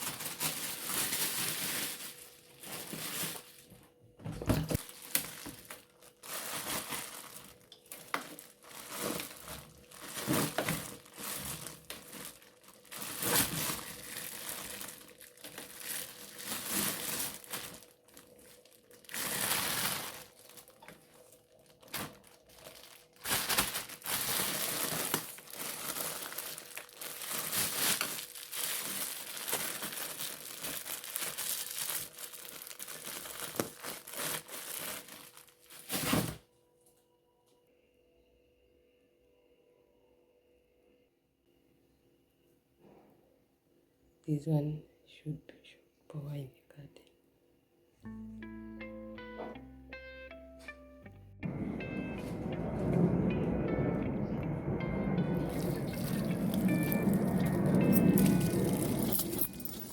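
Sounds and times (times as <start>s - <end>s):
crinkly material crumpling: 0.0s - 3.9s, 4.5s - 36.5s, 55.3s - 59.9s.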